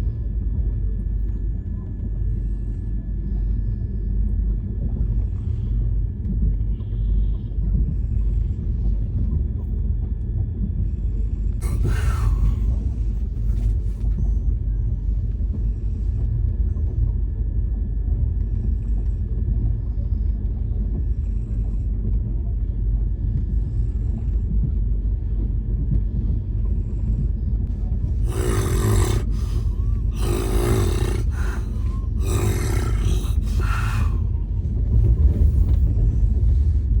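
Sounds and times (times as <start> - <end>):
person snoring: 11.6 - 12.8, 28.2 - 34.3.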